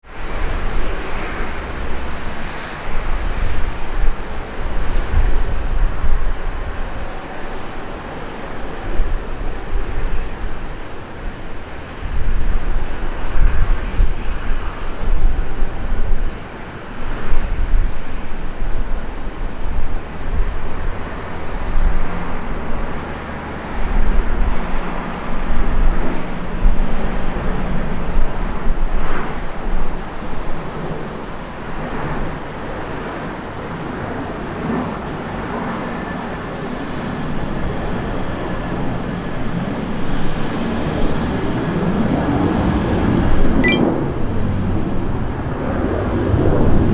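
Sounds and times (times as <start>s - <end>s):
wind on microphone: 0.0s - 46.9s
jet engines roaring: 12.8s - 46.9s.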